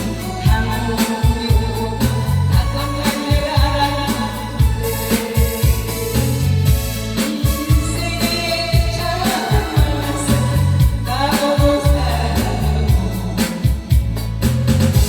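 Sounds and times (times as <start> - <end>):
woman singing: 0.0 - 14.2
backing track with bass and beat: 0.0 - 15.0.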